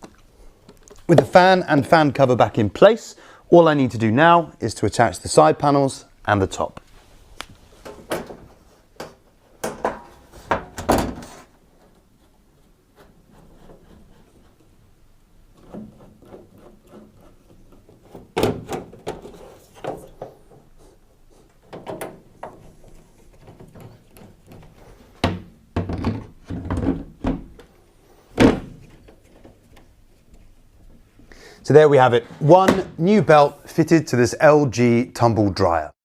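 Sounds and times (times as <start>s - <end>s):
metal panels knocking and clunking: 21.7s - 27.7s.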